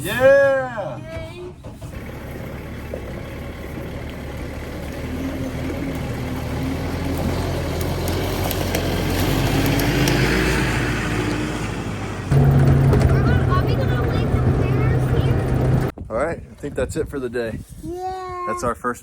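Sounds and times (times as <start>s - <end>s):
tractor engine running: 1.7s - 16.0s.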